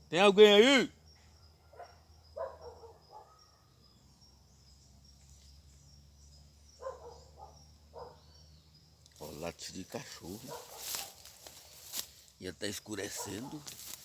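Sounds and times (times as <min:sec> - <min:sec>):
insects chirring: 0:00.0 - 0:14.0
distant dog barking: 0:01.6 - 0:03.8, 0:06.7 - 0:08.5, 0:10.3 - 0:11.4, 0:13.0 - 0:13.8.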